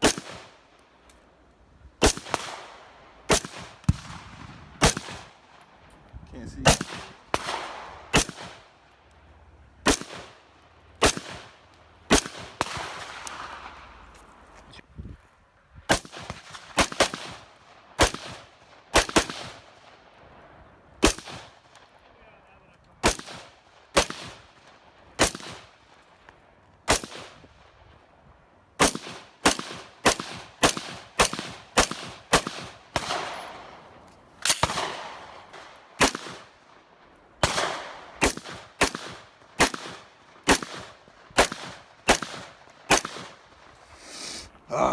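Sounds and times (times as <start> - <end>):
gunshots ringing out: 0.0 - 0.5, 2.0 - 5.4, 6.6 - 8.6, 9.8 - 10.4, 11.0 - 11.5, 12.1 - 13.8, 15.9 - 17.4, 18.0 - 19.6, 21.0 - 21.5, 23.0 - 24.4, 25.2 - 25.7, 26.9 - 27.4, 28.8 - 36.6, 37.4 - 43.4.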